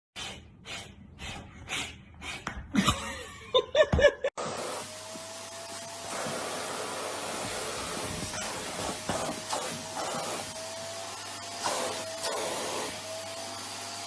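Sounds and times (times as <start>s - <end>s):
person laughing: 2.7s - 4.3s.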